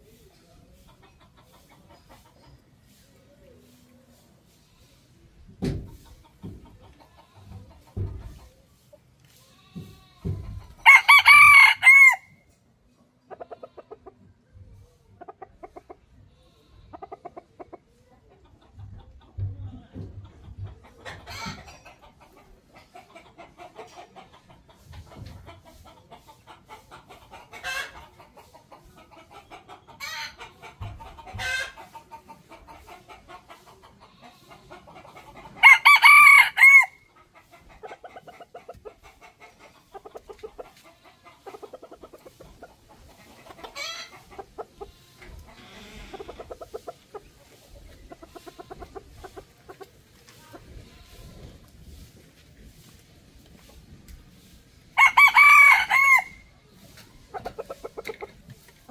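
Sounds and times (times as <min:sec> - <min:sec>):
chickens clucking: 0:00.0 - 0:58.9
rooster crowing: 0:10.8 - 0:12.3, 0:35.6 - 0:37.0, 0:55.0 - 0:56.4.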